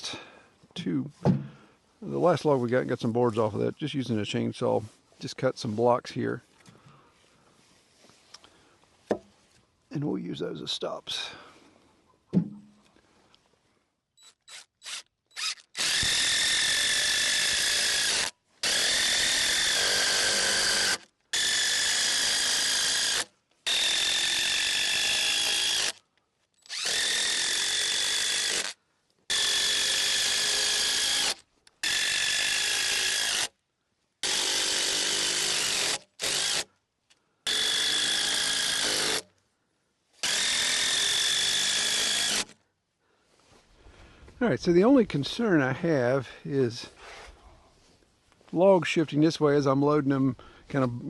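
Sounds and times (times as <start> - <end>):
power drill driving screws: 14.2 - 26.0, 26.6 - 33.6, 34.2 - 36.7, 37.4 - 39.2, 40.2 - 42.6.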